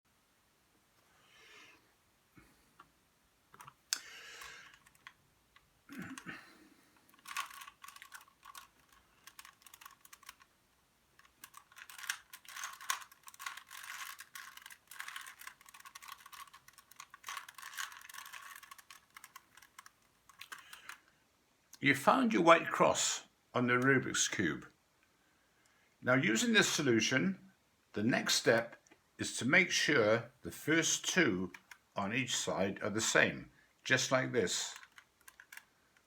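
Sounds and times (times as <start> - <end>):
puzzle cube clicking: 7.0 - 10.5, 11.2 - 21.0, 31.4 - 31.9, 34.0 - 35.7.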